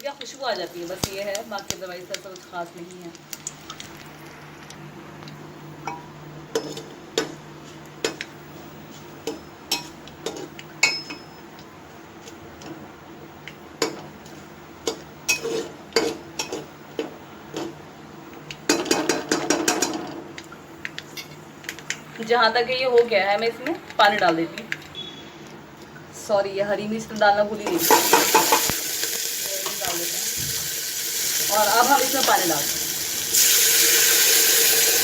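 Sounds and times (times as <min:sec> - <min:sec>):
metal spoon clinking on pot: 0:10.8 - 0:11.4.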